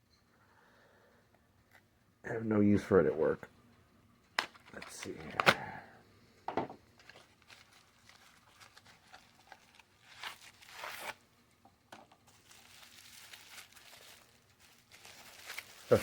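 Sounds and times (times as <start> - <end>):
packaging crinkling and tearing: 7.0 - 11.2, 12.2 - 16.0.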